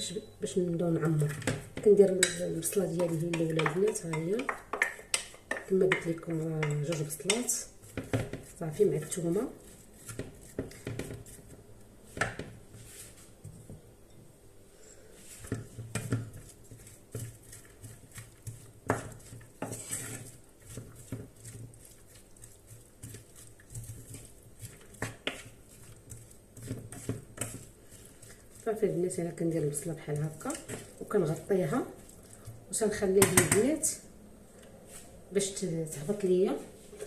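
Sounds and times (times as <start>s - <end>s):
utensil scraping against a pot: 1.0s - 11.6s, 15.2s - 33.6s.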